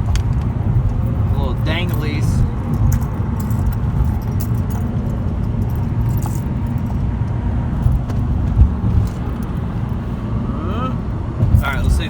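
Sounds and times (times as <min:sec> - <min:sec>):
road rumble inside car: 0:00.0 - 0:12.0
jewelry clinking: 0:01.1 - 0:07.0.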